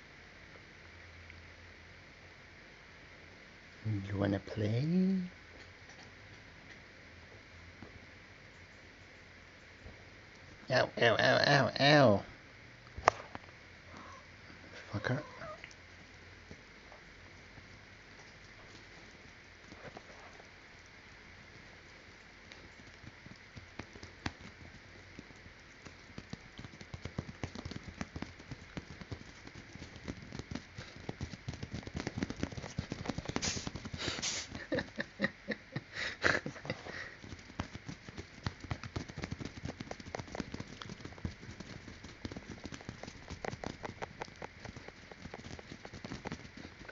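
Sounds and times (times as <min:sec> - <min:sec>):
soft clicking and rustling: 0:15.6 - 0:34.9, 0:36.6 - 0:46.9
cat sneezing: 0:33.4 - 0:34.7.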